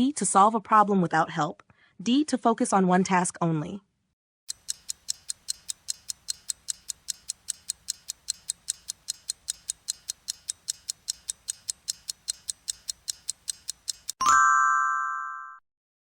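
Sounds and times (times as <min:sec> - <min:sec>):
clock ticking: 0:04.5 - 0:14.2.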